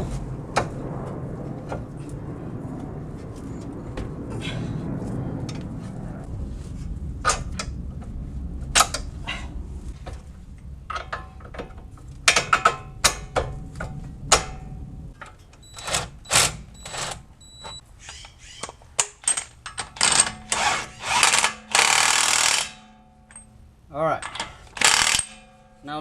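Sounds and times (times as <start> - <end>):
rasping bursts: 20.0 - 23.0, 24.6 - 25.5
metal tools clanking on car parts: 24.2 - 25.8.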